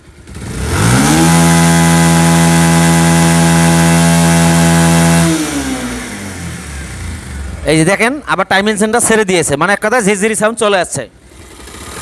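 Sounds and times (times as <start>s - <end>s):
motorcycle engine revving: 0.0s - 8.1s, 11.2s - 12.0s
chattering engine rattle: 11.2s - 12.0s.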